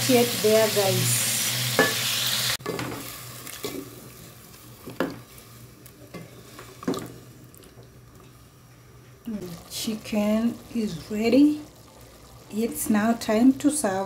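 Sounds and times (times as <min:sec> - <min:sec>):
stew sizzling in a pan: 0:00.0 - 0:05.7.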